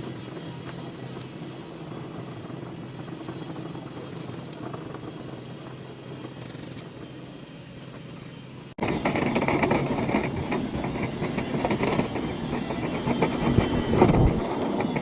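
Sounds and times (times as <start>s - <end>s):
motor hum: 0.0s - 15.0s
rough rushing noise with rattling: 8.8s - 15.0s.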